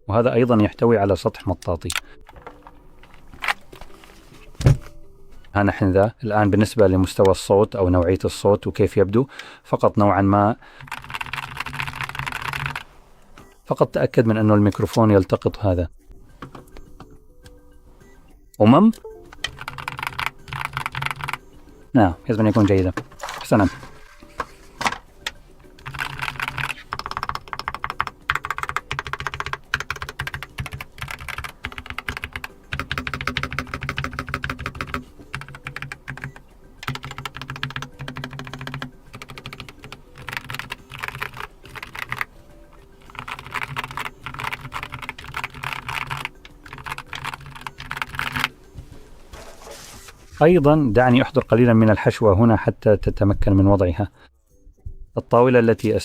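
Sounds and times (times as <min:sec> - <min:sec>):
keyboard typing clacks: 0:10.8 - 0:12.9, 0:19.3 - 0:21.4, 0:25.8 - 0:48.6.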